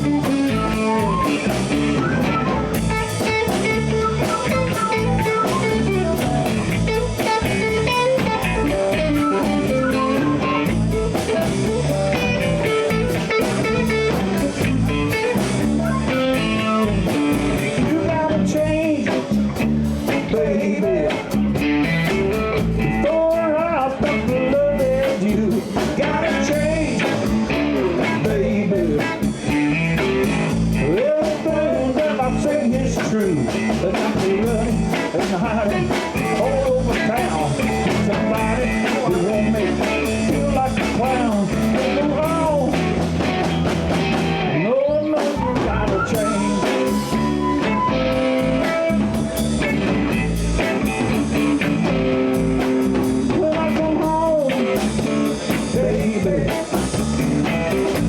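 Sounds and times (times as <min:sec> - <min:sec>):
lead guitar bending notes: 0:00.0 - 0:23.2, 0:33.2 - 0:58.0
blues band playing: 0:00.0 - 0:58.0.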